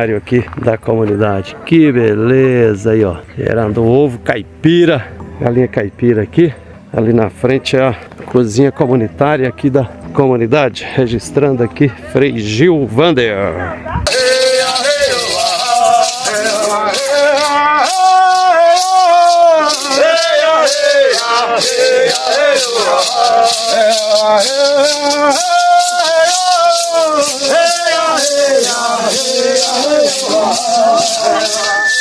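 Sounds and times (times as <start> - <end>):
chanted singing: 14.1 - 32.0
maraca rattles shaken: 14.1 - 32.0.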